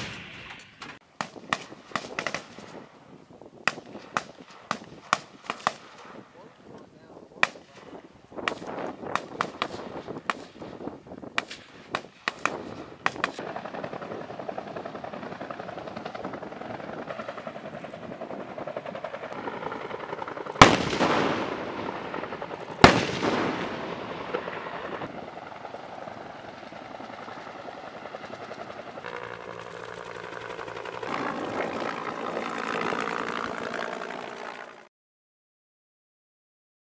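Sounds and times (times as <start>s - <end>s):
gunshots: 0.0s - 2.8s, 3.7s - 6.3s, 7.4s - 25.2s
heavy blasts with rumble: 1.3s - 33.7s
engine-like noise: 24.2s - 34.9s
fast-beating mechanical noise: 25.9s - 34.9s.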